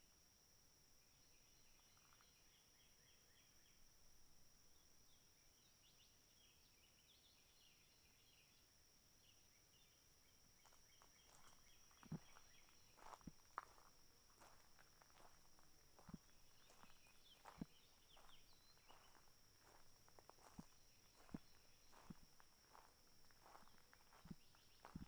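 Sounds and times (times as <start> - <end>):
insect chirping: 0.0 - 25.0
footsteps: 11.3 - 25.0.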